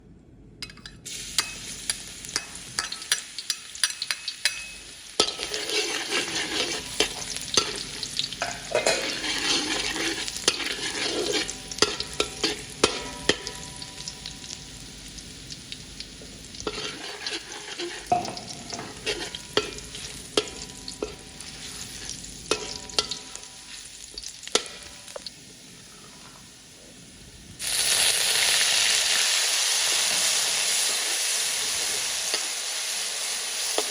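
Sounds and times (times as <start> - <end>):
food sizzling in hot oil: 1.0 - 33.9
utensil scraping pan: 2.4 - 13.6, 16.6 - 23.9.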